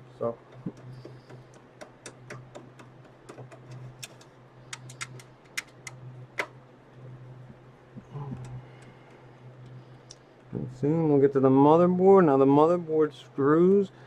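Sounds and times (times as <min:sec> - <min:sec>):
steady low hum: 0:00.0 - 0:14.0
computer parts clicking and tapping: 0:00.4 - 0:06.6.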